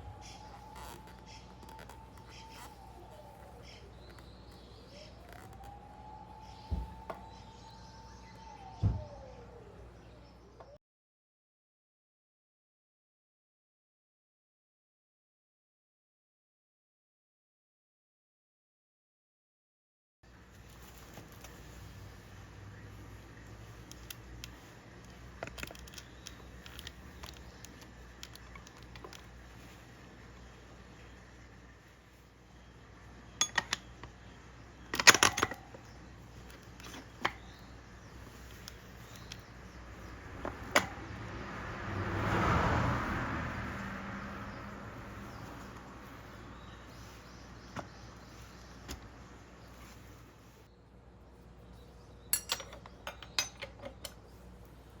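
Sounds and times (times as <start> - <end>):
low steady hum: 0.0 - 10.8
small hard parts clicking: 23.8 - 29.4
vehicle passing by: 39.6 - 48.2.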